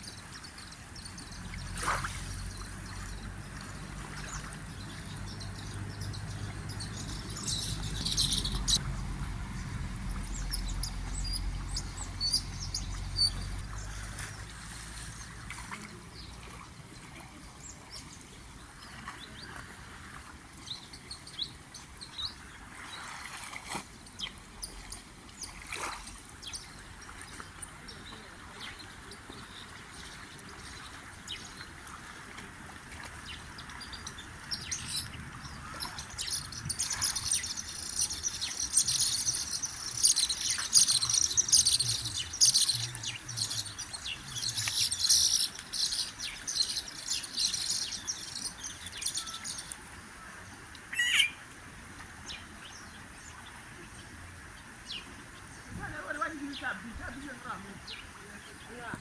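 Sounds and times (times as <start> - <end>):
small birds chirping: 0.0 - 19.6, 24.0 - 31.8, 33.2 - 49.8, 50.9 - 51.4.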